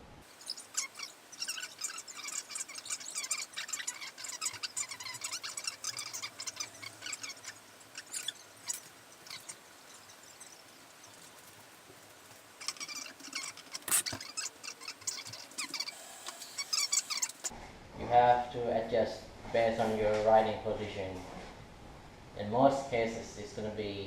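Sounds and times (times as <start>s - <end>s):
hand tools clicking and squeaking: 0.3s - 17.5s.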